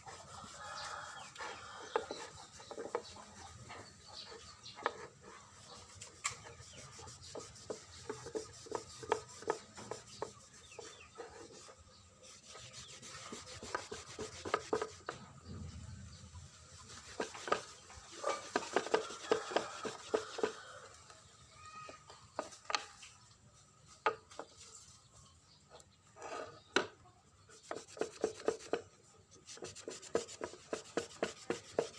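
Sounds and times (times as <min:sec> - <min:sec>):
hand scraping strokes on workpiece: 0:00.0 - 0:15.3, 0:16.5 - 0:20.9, 0:27.4 - 0:31.9.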